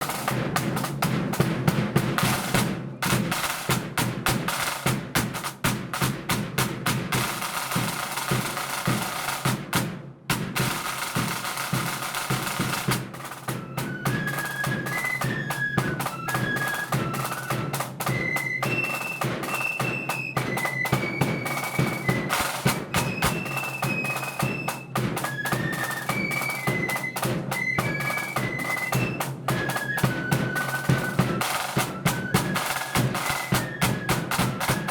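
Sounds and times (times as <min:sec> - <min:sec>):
snare drum rolls: 0:00.0 - 0:34.9
flutes playing high melody: 0:13.4 - 0:34.9.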